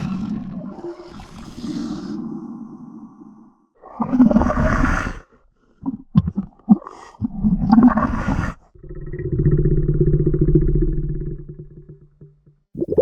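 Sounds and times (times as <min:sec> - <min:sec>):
low creature growl with rattle: 0:00.0 - 0:05.2, 0:07.8 - 0:12.6
creature snarl: 0:00.0 - 0:05.4, 0:06.8 - 0:11.6.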